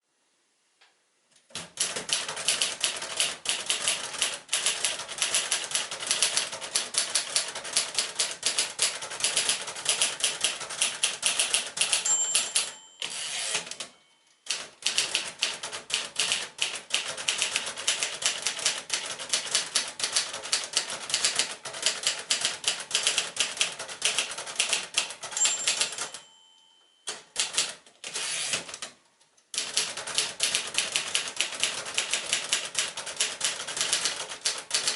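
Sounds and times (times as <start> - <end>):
manual typewriter typing: 1.5 - 13.9, 14.5 - 26.3, 27.1 - 28.9, 29.5 - 34.9
typewriter carriage return: 1.5 - 26.3, 27.1 - 29.0, 29.6 - 34.9
typewriter margin bell: 1.8 - 28.8.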